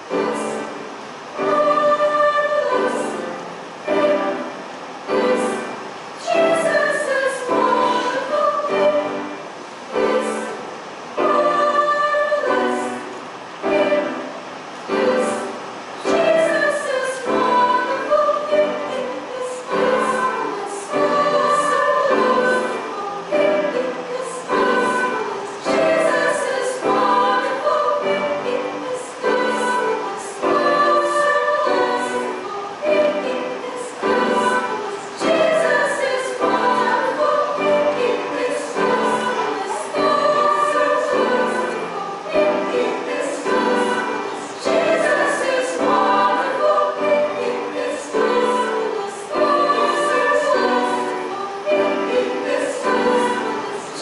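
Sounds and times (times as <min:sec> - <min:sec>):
choir singing a hymn: 0:00.0 - 0:54.0.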